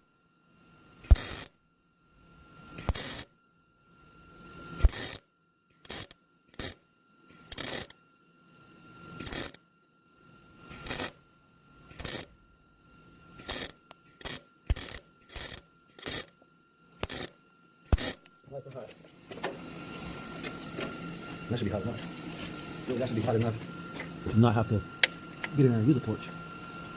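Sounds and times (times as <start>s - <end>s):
welder bursts: 1.0s - 1.5s, 2.8s - 3.2s, 4.8s - 5.2s, 5.8s - 6.8s, 7.4s - 7.9s, 9.2s - 9.6s, 10.7s - 11.1s, 11.9s - 12.3s, 13.4s - 16.3s, 17.0s - 17.3s, 17.9s - 18.2s.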